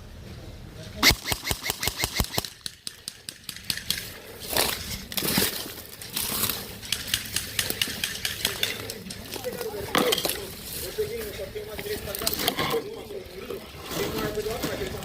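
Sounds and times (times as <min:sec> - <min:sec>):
airsoft gun shots: 0:01.0 - 0:04.0
rustling: 0:02.8 - 0:15.0.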